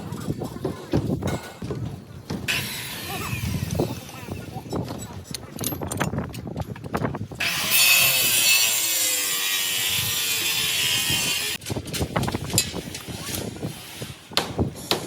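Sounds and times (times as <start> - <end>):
power saw cutting: 7.4 - 11.6.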